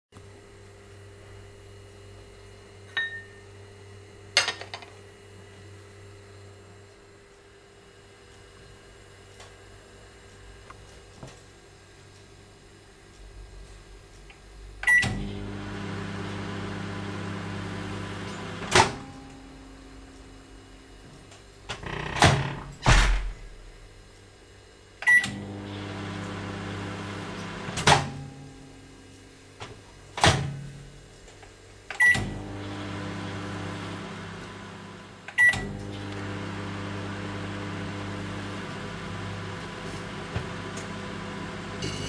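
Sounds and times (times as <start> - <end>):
microwave oven humming: 0.2 - 42.0
microwave beep: 2.9 - 3.6, 14.8 - 18.6, 25.0 - 27.8, 31.9 - 34.1, 35.3 - 39.6, 41.7 - 42.0.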